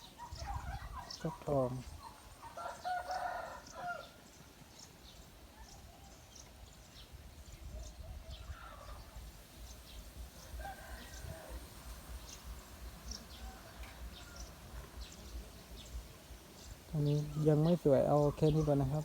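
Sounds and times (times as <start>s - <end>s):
chickens calling: 0.0s - 7.1s, 7.7s - 19.0s
rooster crowing: 2.4s - 4.3s, 10.4s - 12.4s, 13.0s - 15.1s.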